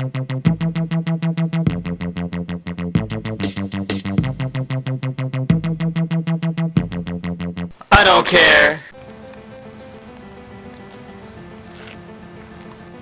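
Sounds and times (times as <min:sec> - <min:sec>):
synthesizer repeated chords: 0:00.0 - 0:07.7.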